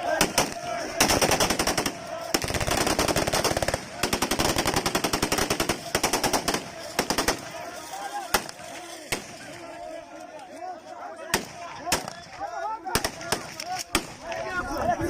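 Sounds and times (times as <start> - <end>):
faint voices: 0.0 - 15.0
automatic gunfire: 0.1 - 7.5.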